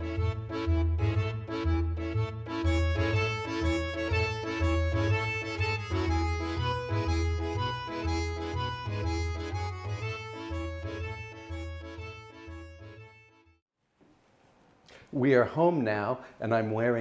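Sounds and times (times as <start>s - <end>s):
accordion music: 0.0s - 13.6s.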